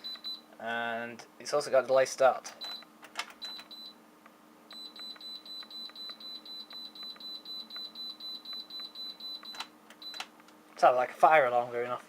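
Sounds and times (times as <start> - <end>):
short beeps: 4.7 - 10.2
pulsing high-pitched beep: 4.8 - 10.2.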